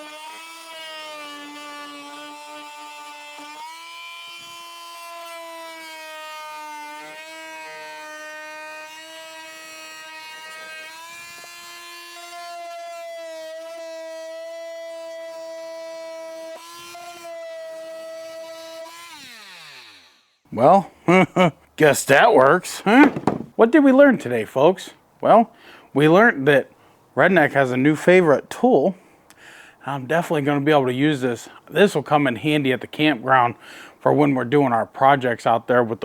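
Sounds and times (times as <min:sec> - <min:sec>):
oscillating multi-tool buzzing: 0:00.0 - 0:20.4.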